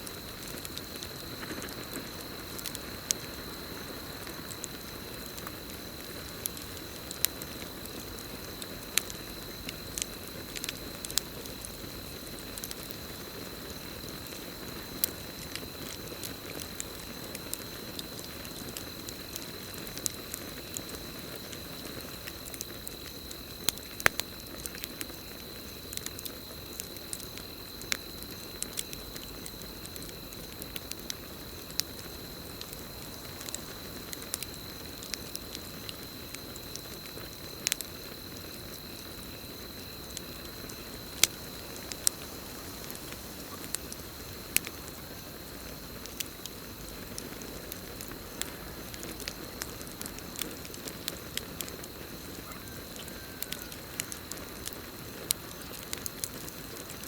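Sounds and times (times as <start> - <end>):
campfire crackling and popping: 0.0 - 57.0
cricket trill: 0.0 - 57.0.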